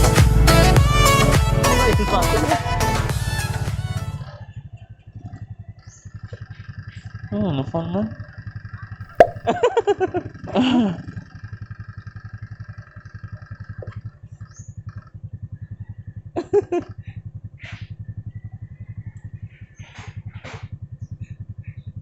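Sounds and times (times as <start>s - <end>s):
motorcycle engine running: 4.5s - 19.6s.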